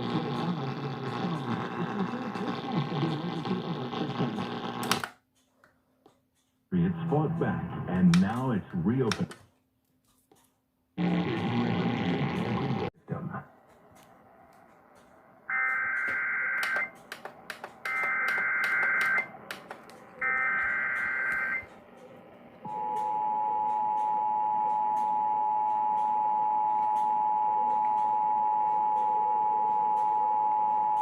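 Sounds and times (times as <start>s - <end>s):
two-note alarm tone: 15.5s - 16.9s, 20.2s - 21.7s.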